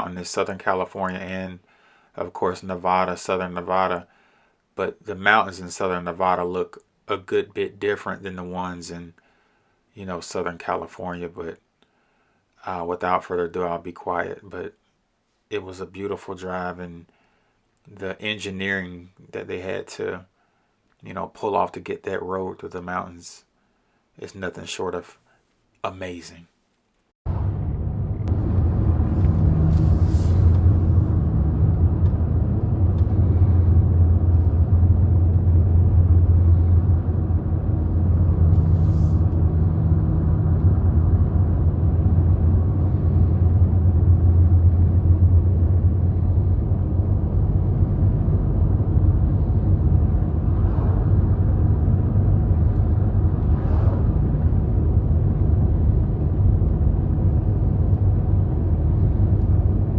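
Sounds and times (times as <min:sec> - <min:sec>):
car engine and road noise: 0:27.3 - 0:59.9.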